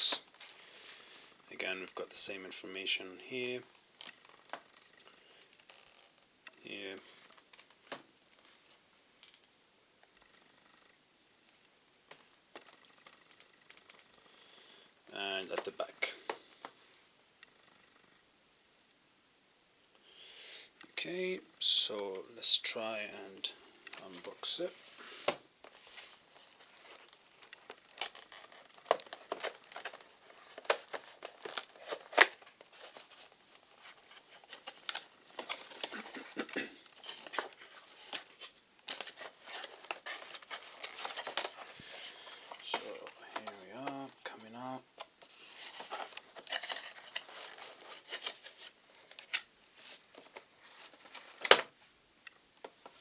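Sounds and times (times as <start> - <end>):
packaging rustling and clicking: 12.1 - 14.1, 23.7 - 53.0.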